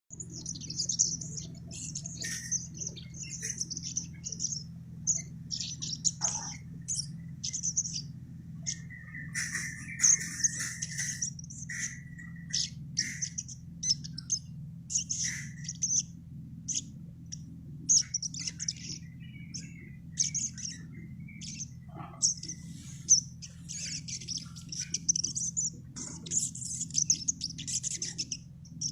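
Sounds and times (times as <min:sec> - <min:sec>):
songbird chirping and whistling: 0:00.1 - 0:28.9
steady low hum: 0:00.1 - 0:28.9.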